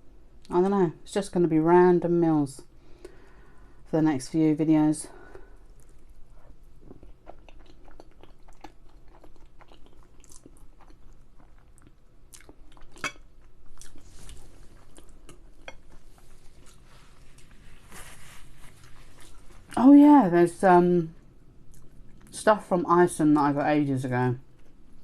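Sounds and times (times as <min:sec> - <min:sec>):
person chewing food: 0:05.6 - 0:19.8, 0:21.6 - 0:22.4.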